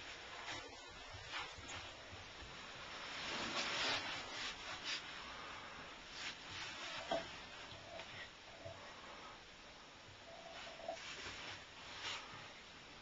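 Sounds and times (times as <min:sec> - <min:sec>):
scraping and rubbing: 0:02.7 - 0:05.3.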